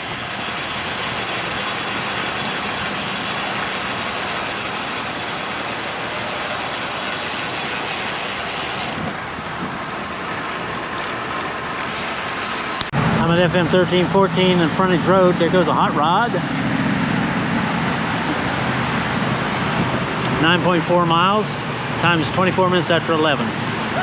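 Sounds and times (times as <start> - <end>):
bicycle freehub ratcheting: 0.0 - 9.1, 11.8 - 12.9
road and wind noise: 0.0 - 24.0.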